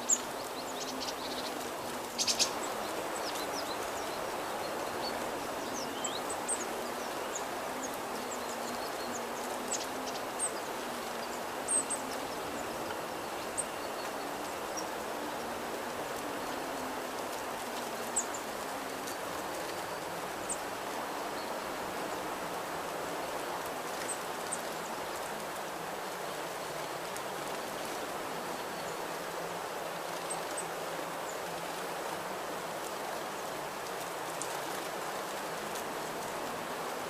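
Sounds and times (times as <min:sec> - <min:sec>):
small birds chirping: 0:00.0 - 0:22.4.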